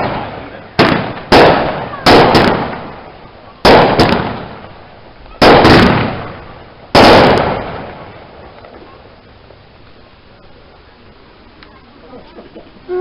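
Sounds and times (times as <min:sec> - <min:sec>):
small firework pops: 0:00.0 - 0:03.0, 0:03.6 - 0:09.1
fireworks bangs: 0:00.0 - 0:10.9.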